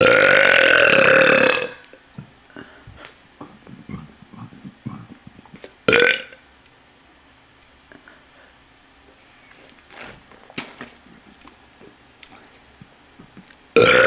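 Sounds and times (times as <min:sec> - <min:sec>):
person burping: 0:00.0 - 0:01.8, 0:03.4 - 0:06.4, 0:13.8 - 0:14.0.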